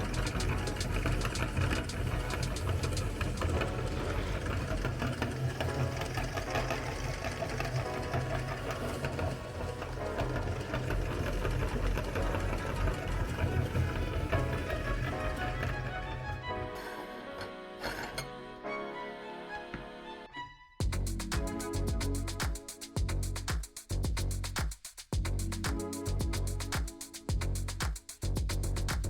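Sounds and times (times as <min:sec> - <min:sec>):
meat grinder motor hum: 0:00.0 - 0:16.4.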